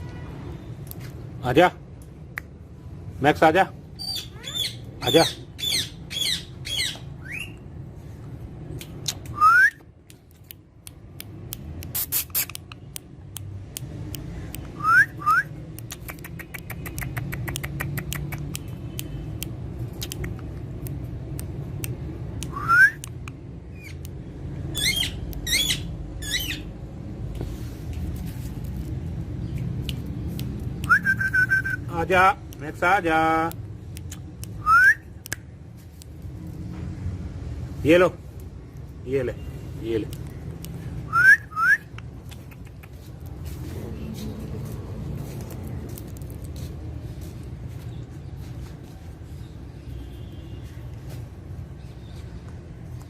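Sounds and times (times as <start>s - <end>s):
parrot warbling chirps: 4.0s - 7.6s, 24.7s - 26.7s
parrot rising whistles: 41.1s - 41.9s.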